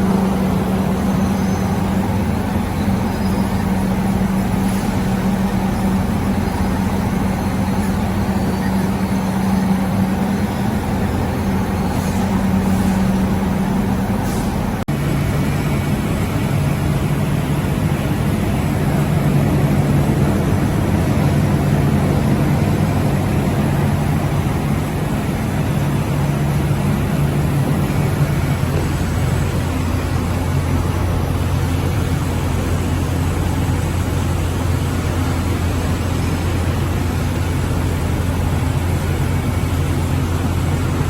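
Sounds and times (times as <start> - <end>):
machinery humming and whirring: 0.0 - 41.0.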